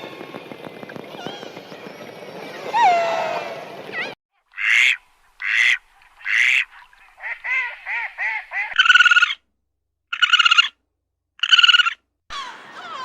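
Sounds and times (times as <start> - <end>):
poultry calling: 11.4 - 13.0.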